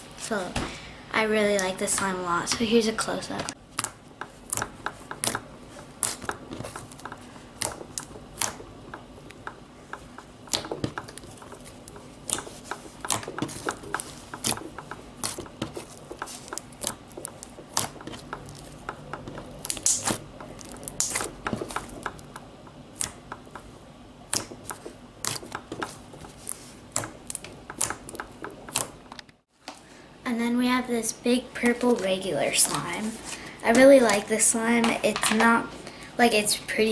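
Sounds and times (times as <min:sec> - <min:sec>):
slime squished clicking and popping: 0:07.6 - 0:08.6, 0:19.6 - 0:22.4.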